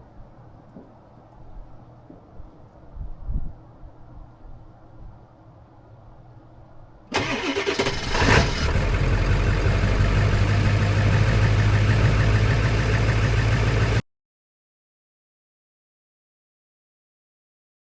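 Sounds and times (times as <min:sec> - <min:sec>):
engine cranking and starting: 0:07.1 - 0:14.0
engine idling: 0:07.2 - 0:14.0.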